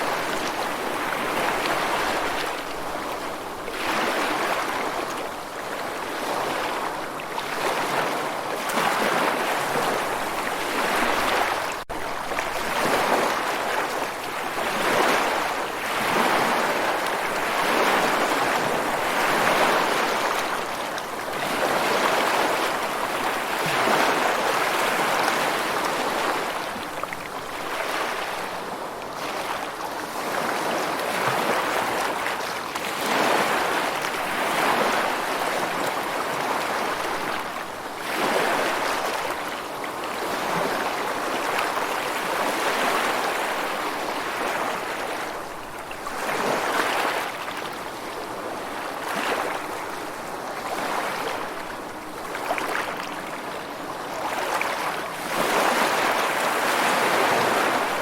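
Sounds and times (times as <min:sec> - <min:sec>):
rushing water: 0:00.0 - 0:58.0.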